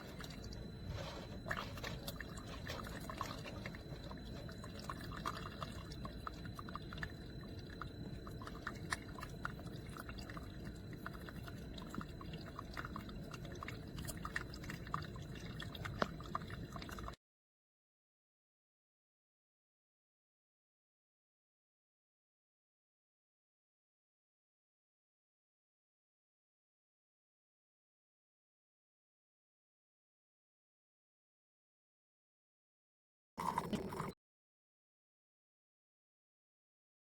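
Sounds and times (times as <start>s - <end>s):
coffee dripping into mug: 0.0s - 17.2s, 33.4s - 34.2s.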